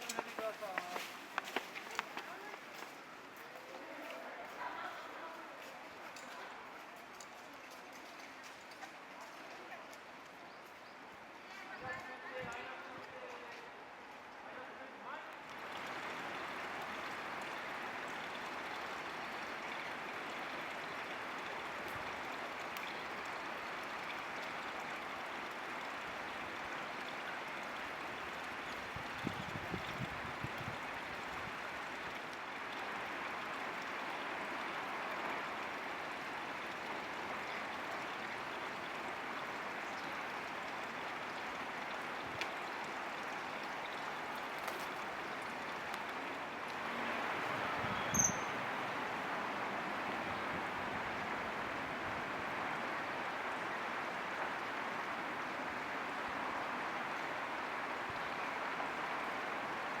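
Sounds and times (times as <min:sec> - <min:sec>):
stream water rushing: 0:13.2 - 1:00.0
high-pitched chirp: 0:48.0 - 0:48.6.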